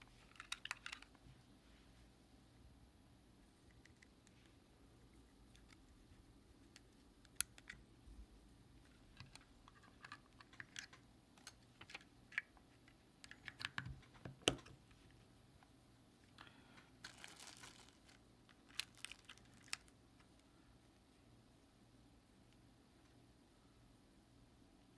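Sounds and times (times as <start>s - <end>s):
packaging rustle: 17.0s - 19.9s.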